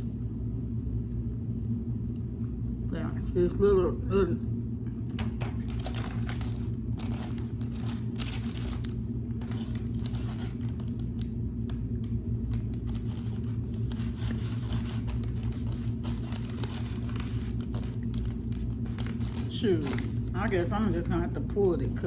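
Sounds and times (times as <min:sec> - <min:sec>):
steady low hum: 0:00.0 - 0:22.0
small crackles and clicks: 0:05.1 - 0:20.6.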